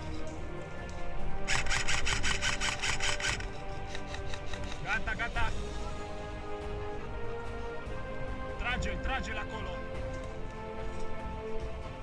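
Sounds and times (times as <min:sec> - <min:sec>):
rapid airsoft gunfire: 0:01.5 - 0:04.5.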